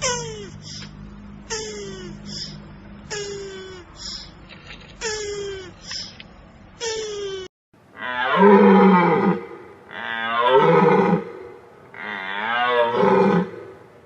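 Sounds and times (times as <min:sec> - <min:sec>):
large animal roaring calls: 0:08.0 - 0:13.8.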